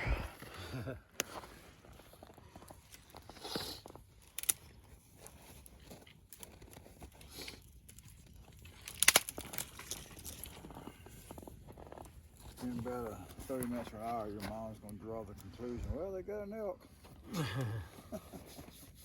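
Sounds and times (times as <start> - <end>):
campfire crackling: 0.0 - 18.8
sharp wood snaps: 4.2 - 4.8, 7.4 - 10.6.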